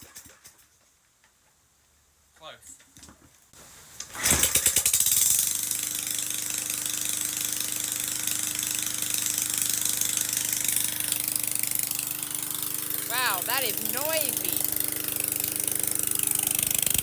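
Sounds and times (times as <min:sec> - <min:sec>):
lawn mower engine barking: 0:06.2 - 0:17.0.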